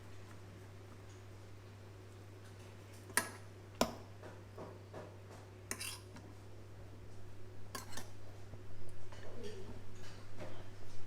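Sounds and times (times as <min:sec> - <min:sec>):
low steady hum: 0:05.2 - 0:11.0.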